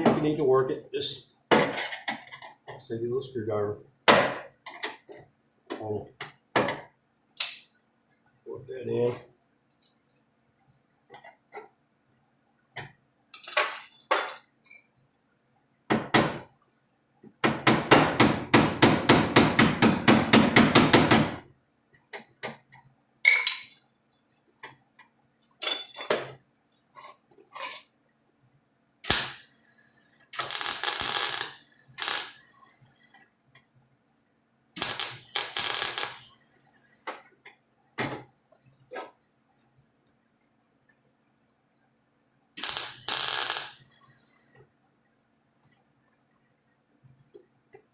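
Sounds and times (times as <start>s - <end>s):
hissing bursts: 29.0s - 33.3s, 34.8s - 37.3s, 42.6s - 44.6s.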